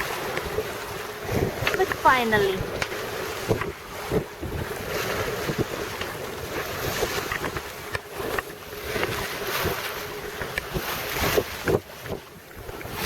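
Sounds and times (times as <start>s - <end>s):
sea water rushing along hull: 0.0s - 13.0s
wind buffeting microphone: 0.0s - 13.0s.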